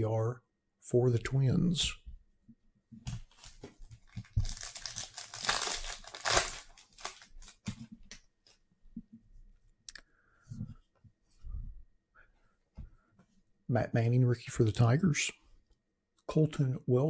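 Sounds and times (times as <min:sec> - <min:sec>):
cards clicking and rustling: 0:03.1 - 0:08.2
foil wrapper tearing and crinkling: 0:03.3 - 0:07.7.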